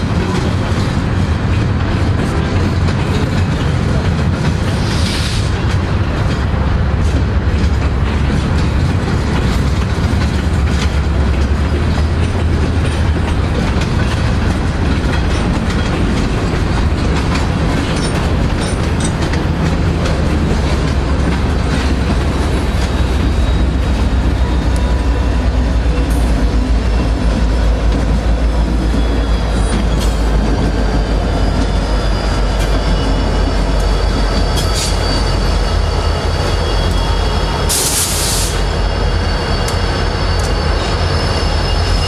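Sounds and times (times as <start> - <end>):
wheels clicking over rail joints: 0.0 - 37.0
train rumbling past: 0.0 - 42.0
faint wheel squeal: 28.9 - 42.0.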